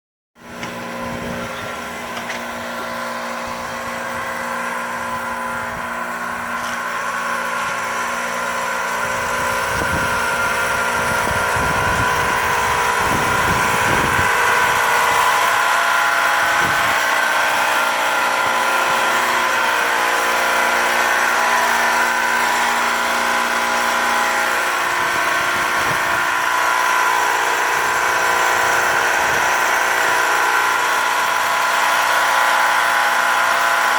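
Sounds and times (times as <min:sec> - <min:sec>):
heat pump humming and whining: 0:00.4 - 0:33.9.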